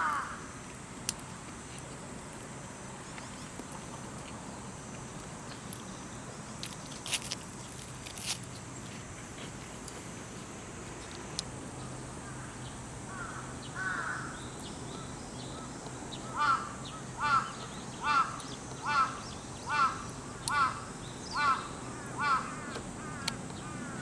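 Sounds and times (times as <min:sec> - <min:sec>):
crow cawing: 0:00.0 - 0:00.5, 0:12.3 - 0:14.4, 0:16.2 - 0:24.0.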